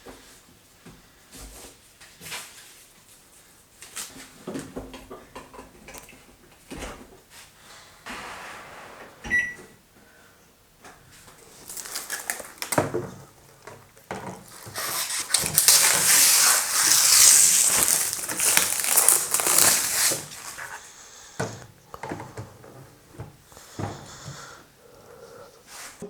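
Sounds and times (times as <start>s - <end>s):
rustling crinkling handling noise: 11.2s - 20.9s.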